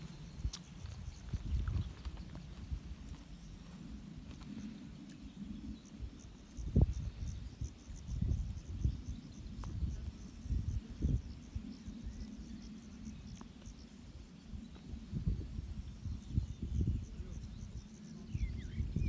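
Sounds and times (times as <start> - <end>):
low thumps and rustles: 0.0 - 4.6
crickets chirping: 0.0 - 19.0.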